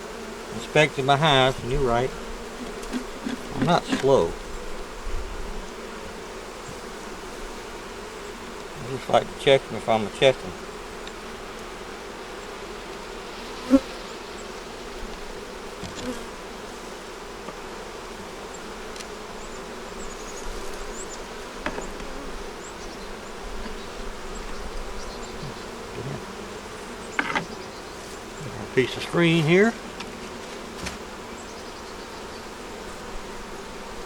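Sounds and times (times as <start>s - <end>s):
honey bees buzzing: 0.0s - 34.0s
light taps of hive parts: 2.5s - 4.2s, 8.6s - 8.8s, 11.0s - 11.8s, 15.1s - 16.2s, 17.4s - 17.7s, 18.9s - 19.2s, 21.6s - 22.2s, 27.0s - 28.2s, 29.9s - 31.1s.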